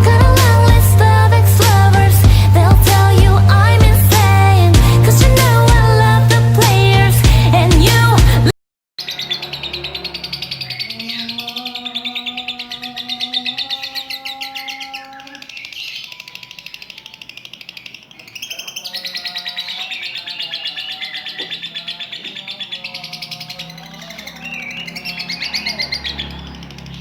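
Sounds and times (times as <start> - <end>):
background music: 0.0 - 8.5
lovebird chattering trill: 9.0 - 27.0.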